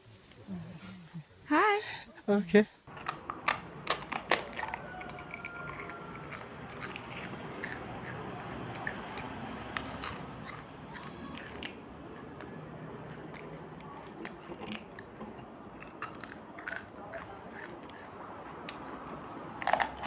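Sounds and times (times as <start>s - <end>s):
crisp shell cracking: 2.9s - 8.2s
close-up chewing: 2.9s - 20.0s.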